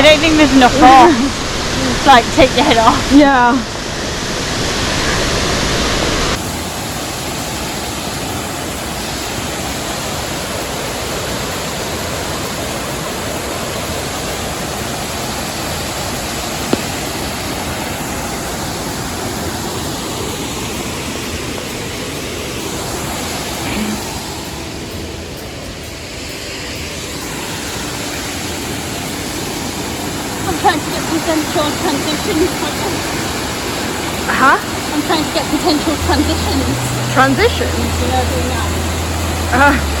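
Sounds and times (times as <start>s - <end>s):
waterfall pouring into pool: 6.3s - 21.7s.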